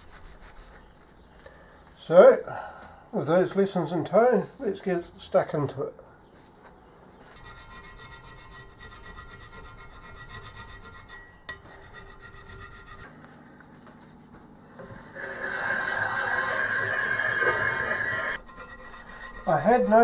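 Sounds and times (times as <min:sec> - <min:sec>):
metal scraping metal: 0:07.3 - 0:13.1, 0:14.8 - 0:20.0.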